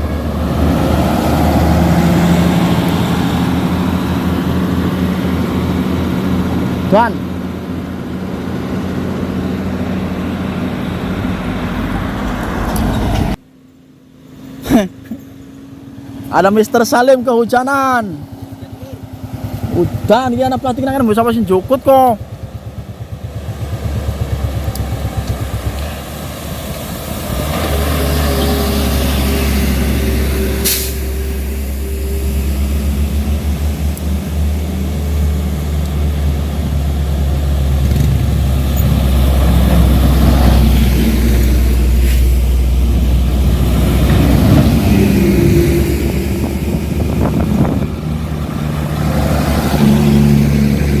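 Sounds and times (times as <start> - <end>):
truck diesel engine rumbling: 0.0 - 51.0
air brake hiss: 30.5 - 32.1, 42.0 - 42.5.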